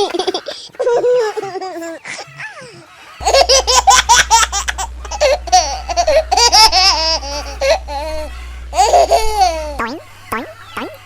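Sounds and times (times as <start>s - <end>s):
high-pitched childlike laughter: 0.0s - 6.8s
low steady hum: 3.2s - 11.0s.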